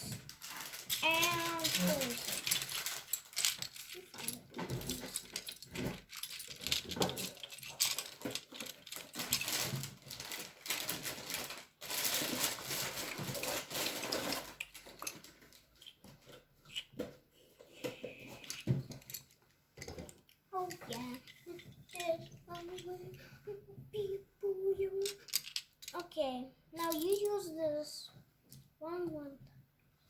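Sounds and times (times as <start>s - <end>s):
plastic bricks clicking and clattering: 0.0s - 16.9s, 24.9s - 26.2s, 26.8s - 27.4s.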